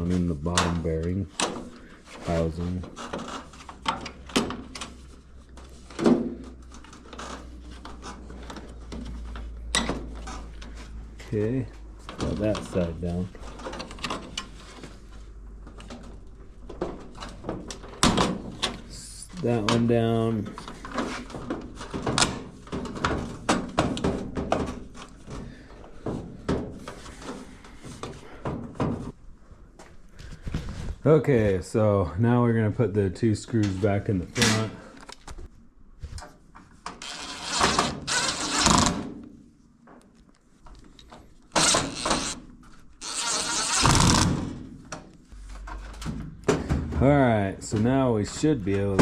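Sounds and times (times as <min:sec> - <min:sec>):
appliance parts knocking and rattling: 0:20.5 - 0:29.1, 0:45.7 - 0:47.1
metal parts scraping and knocking: 0:37.0 - 0:39.0, 0:41.5 - 0:42.4, 0:43.0 - 0:44.3.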